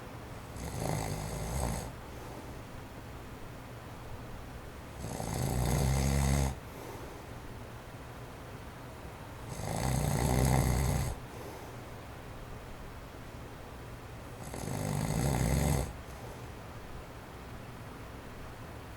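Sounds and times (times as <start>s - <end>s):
man snoring: 0.5s - 2.0s, 5.0s - 6.6s, 9.5s - 11.2s, 14.4s - 16.0s.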